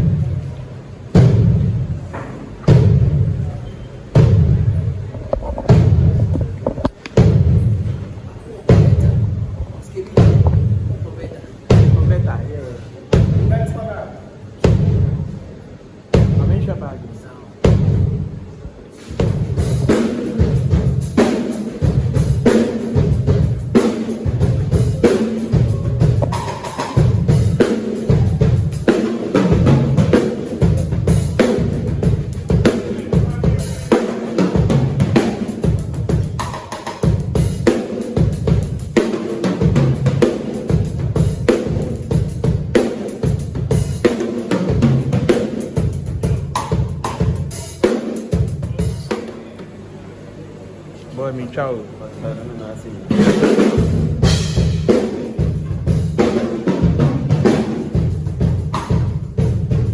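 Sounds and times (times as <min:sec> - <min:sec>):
drum kit playing a groove: 0:17.5 - 0:49.6, 0:53.0 - 0:59.9.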